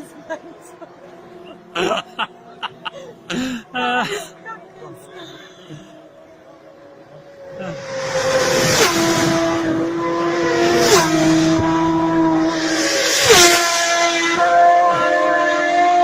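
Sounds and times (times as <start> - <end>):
racing motorcycles passing by: 5.7 - 16.0.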